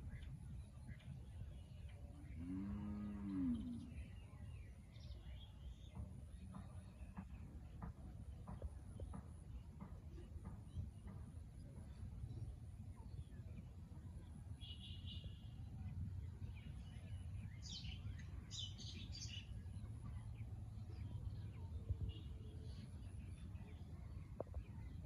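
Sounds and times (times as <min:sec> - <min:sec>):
small birds chirping: 0:16.2 - 0:25.0.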